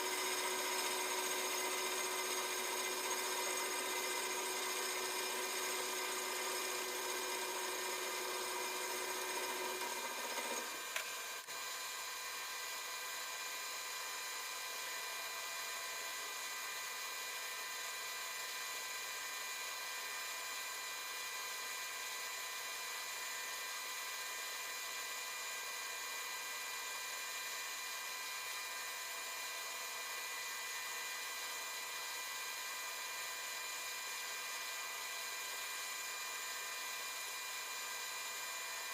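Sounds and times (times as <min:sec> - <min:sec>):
lathe whining: 0:00.0 - 0:11.2.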